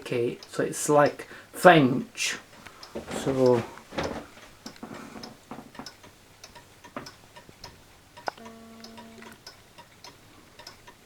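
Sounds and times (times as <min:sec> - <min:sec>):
mechanical clock ticking: 0:00.0 - 0:11.0
sharp click: 0:08.2 - 0:09.6.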